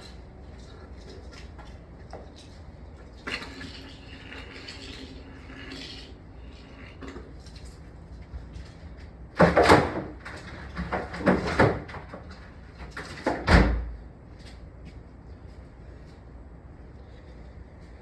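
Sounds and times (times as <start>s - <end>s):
clattering knocks and bangs: 9.4s - 13.8s.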